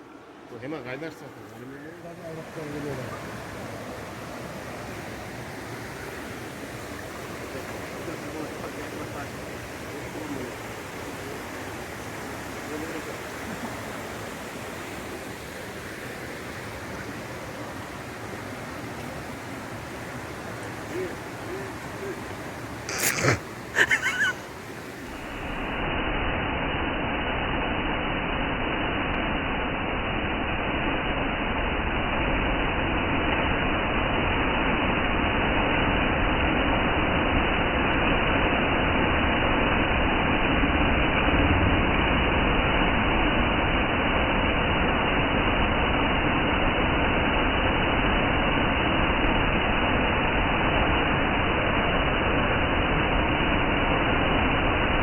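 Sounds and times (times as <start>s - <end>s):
waterfall roaring: 0.0s - 25.9s, 38.3s - 55.0s.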